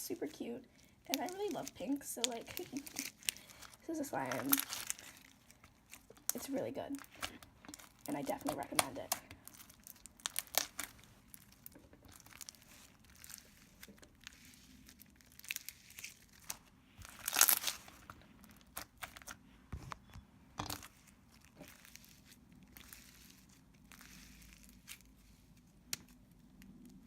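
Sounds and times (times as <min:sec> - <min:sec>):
plastic packaging crinkling: 0:00.0 - 0:20.0, 0:20.6 - 0:27.0.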